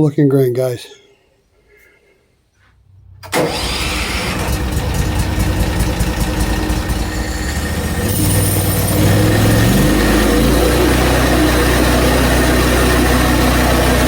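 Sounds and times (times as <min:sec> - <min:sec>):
gasoline engine starting and running: 0:02.9 - 0:14.0.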